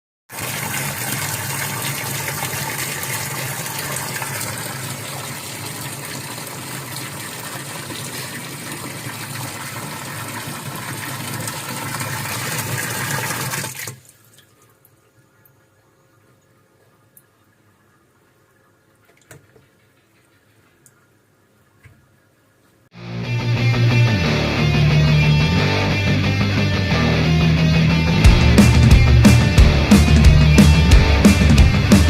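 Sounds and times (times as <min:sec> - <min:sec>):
water rushing in washing machine: 0:00.3 - 0:20.9
faint water drips: 0:13.7 - 0:22.8.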